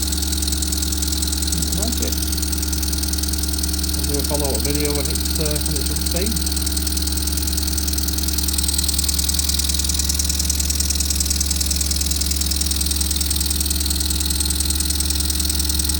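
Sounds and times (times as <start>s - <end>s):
steady low hum: 0.0s - 9.1s
model steam engine exhaust hissing: 0.0s - 15.9s.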